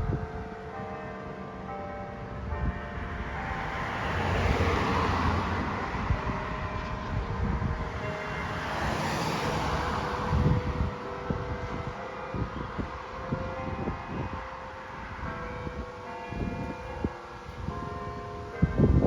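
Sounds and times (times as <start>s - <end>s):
faint hum of church bells: 0.0s - 19.0s
passing vehicle rushing: 2.9s - 12.0s.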